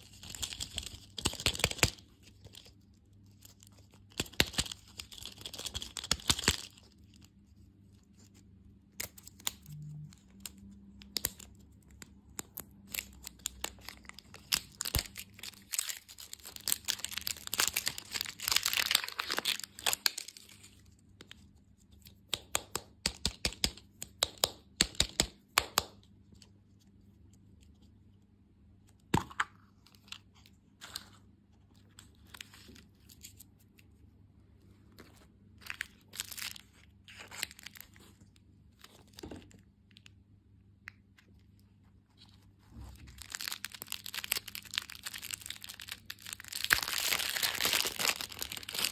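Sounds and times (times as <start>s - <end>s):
plastic wrappers crinkling: 0.0s - 7.3s, 9.0s - 20.9s, 35.0s - 40.0s, 43.0s - 48.9s.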